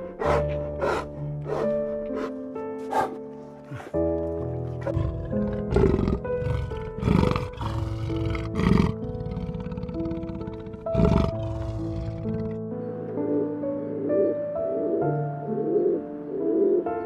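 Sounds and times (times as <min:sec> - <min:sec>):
background music: 0:00.0 - 0:17.0
big cat roaring: 0:04.8 - 0:12.6.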